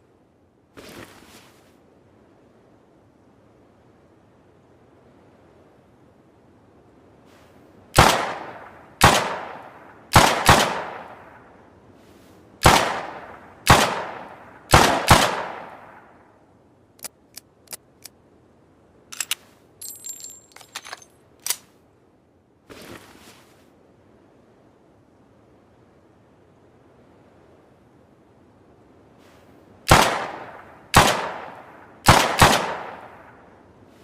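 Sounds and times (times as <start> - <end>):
echoing gunshot bangs: 8.0 - 11.3, 12.6 - 16.0, 29.9 - 33.3
small sharp clicks: 17.0 - 18.2
metallic jingle: 19.2 - 21.1.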